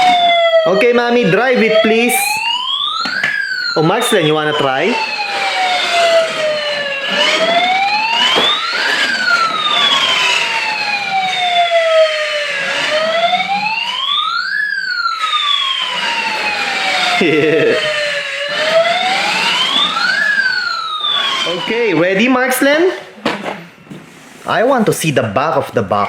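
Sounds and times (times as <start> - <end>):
toy fire truck siren wailing: 0.0 - 22.9.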